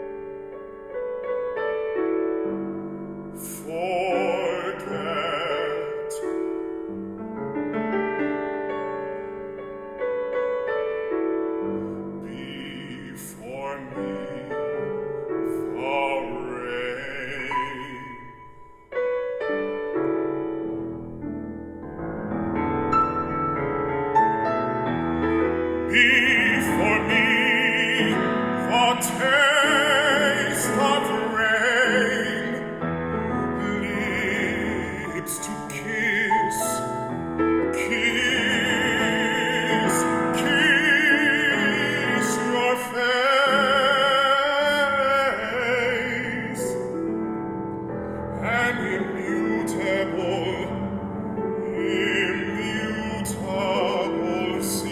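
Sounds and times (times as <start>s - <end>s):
piano accompaniment: 0.0s - 54.9s
baritone singing with vibrato: 3.4s - 6.8s, 12.1s - 19.2s, 25.2s - 47.2s, 48.3s - 54.9s.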